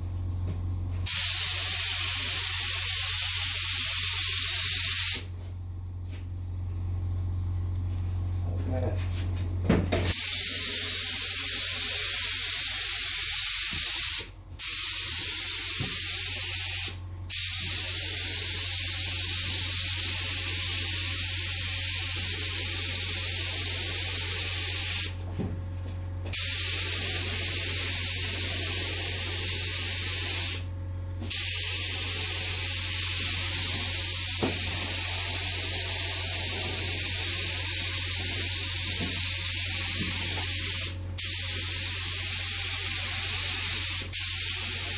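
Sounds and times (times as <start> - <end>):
spray paint hissing: 1.0 - 5.3, 10.1 - 25.2, 26.3 - 44.9.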